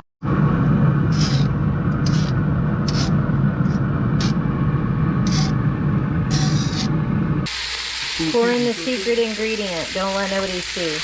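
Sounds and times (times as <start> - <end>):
low rumble: 0.2 - 7.5
hissing scrape: 1.0 - 4.4, 5.2 - 5.6, 6.3 - 7.0.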